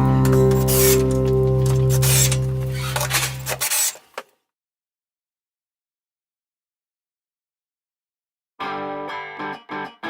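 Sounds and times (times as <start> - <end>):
background music: 0.0 - 3.4
short scratchy noises: 0.6 - 4.2.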